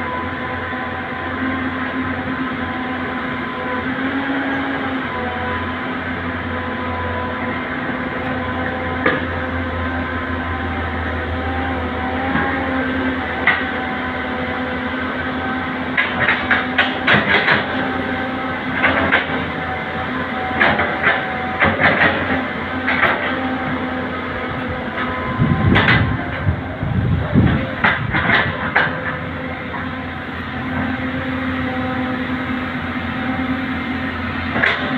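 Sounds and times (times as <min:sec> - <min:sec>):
excavator engine running: 0:00.0 - 0:34.9
short clanks and knocks: 0:20.6 - 0:23.4, 0:27.4 - 0:29.2.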